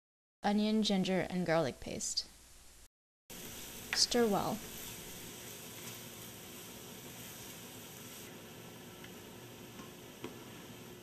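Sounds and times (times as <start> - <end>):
spices frying in hot oil: 3.3 - 11.0.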